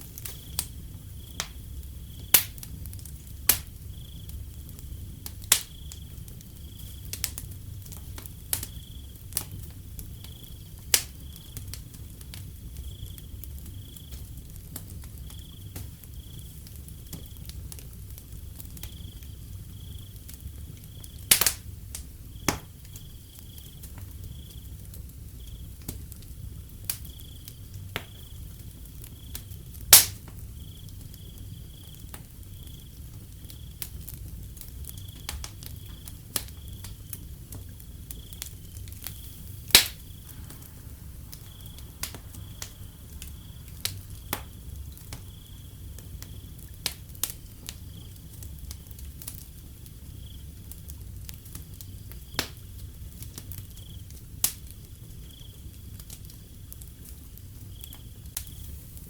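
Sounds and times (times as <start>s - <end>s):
crickets chirping: 0.0s - 59.0s
wood fire crackling: 0.0s - 59.0s.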